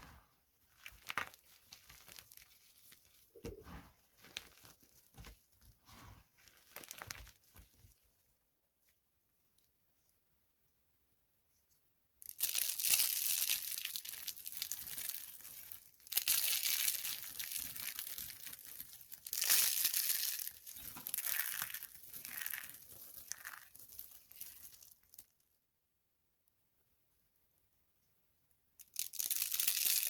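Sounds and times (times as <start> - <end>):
dry soap crunching: 0.0 - 3.6, 4.2 - 7.8, 12.2 - 25.4, 28.8 - 30.0.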